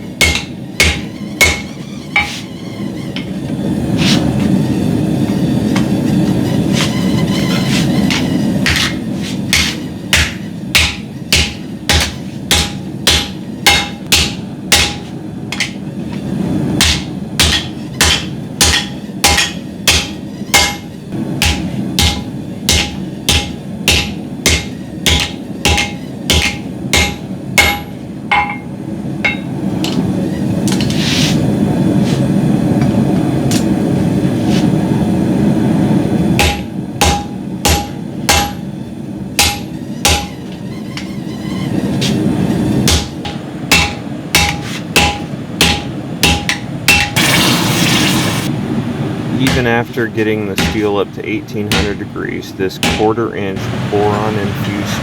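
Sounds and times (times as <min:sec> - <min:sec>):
hammer striking steel on anvil: 0:00.0 - 0:02.4, 0:08.1 - 0:15.8, 0:16.8 - 0:30.0, 0:36.4 - 0:38.7, 0:39.4 - 0:40.4, 0:42.8 - 0:47.4, 0:49.4 - 0:49.8, 0:50.6 - 0:51.0, 0:51.7 - 0:52.1, 0:52.8 - 0:53.2
steady rushing noise: 0:00.0 - 0:55.0.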